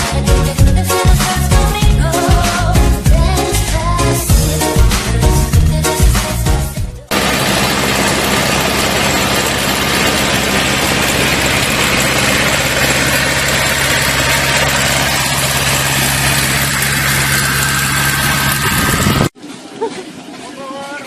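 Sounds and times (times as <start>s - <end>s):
engine idling: 7.1s - 19.4s.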